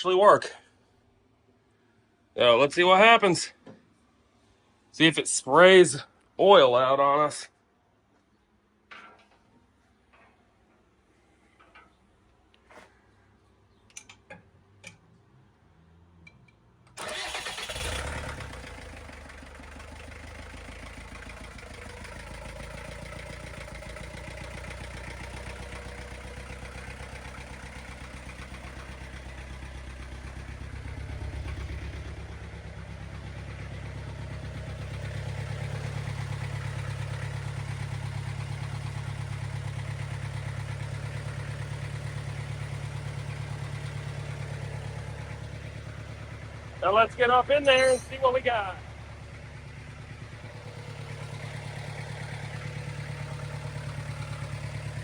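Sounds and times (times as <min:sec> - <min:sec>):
diesel engine starting and idling: 0:16.8 - 0:55.0.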